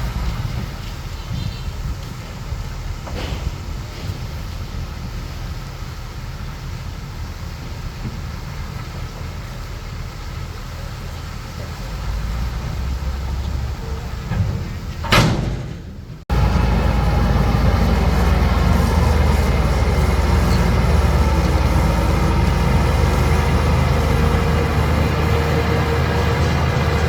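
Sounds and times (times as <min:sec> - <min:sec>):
bulldozer diesel engine running: 0:15.8 - 0:27.0
steady whine: 0:16.3 - 0:27.0.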